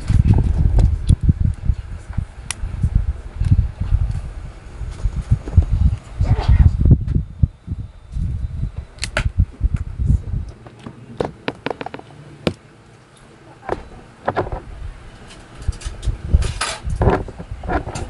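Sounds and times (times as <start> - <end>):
sharp clicks and knocks: 10.6 - 12.6, 13.6 - 18.0.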